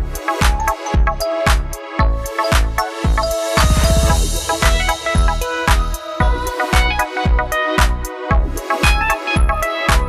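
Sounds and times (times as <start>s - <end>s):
electronic funk music: 0.0s - 10.0s
drum beat: 0.4s - 7.9s.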